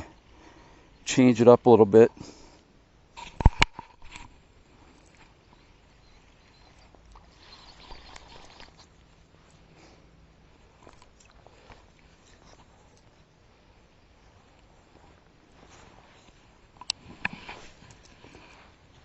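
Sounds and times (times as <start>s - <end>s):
fishing reel clicks and rustling: 6.8s - 9.6s, 16.2s - 18.6s.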